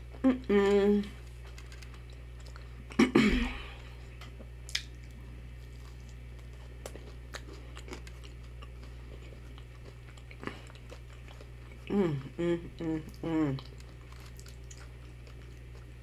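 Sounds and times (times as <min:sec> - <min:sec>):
quiet chewing: 0:00.0 - 0:03.1, 0:03.8 - 0:16.0
steady low hum: 0:00.0 - 0:16.0.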